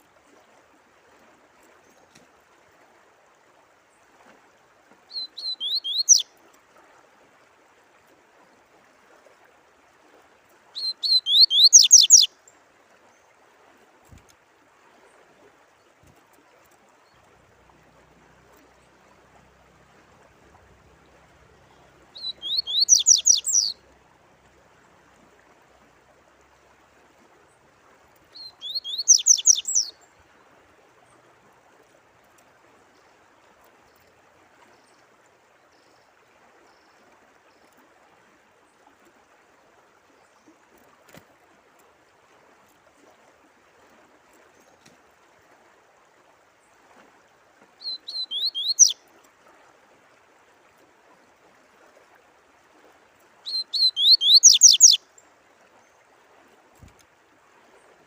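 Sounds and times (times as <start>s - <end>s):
trickle of running water: 0.0s - 58.0s
songbird singing: 5.1s - 6.3s, 10.8s - 12.3s, 20.8s - 24.0s, 28.3s - 30.3s, 47.8s - 49.0s, 53.4s - 55.3s.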